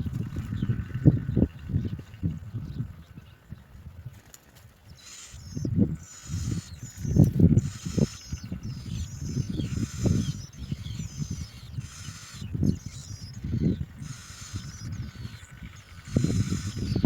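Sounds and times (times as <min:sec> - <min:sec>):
faint bird chirps: 0:04.9 - 0:17.0.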